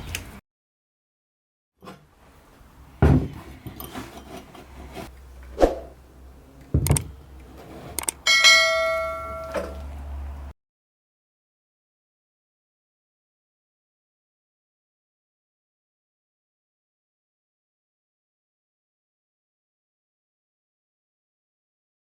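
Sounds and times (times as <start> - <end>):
ringing strike on metal: 8.3 - 9.8.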